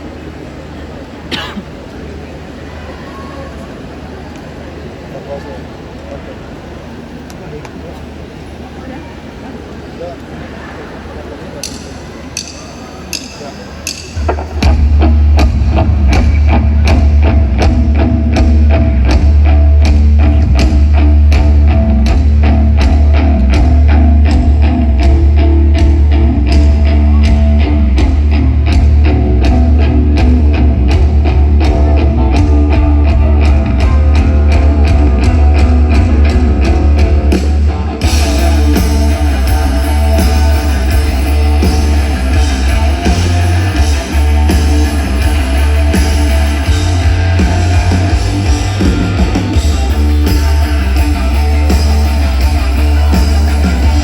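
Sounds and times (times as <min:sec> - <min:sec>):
live rock band playing: 0:11.6 - 0:54.0.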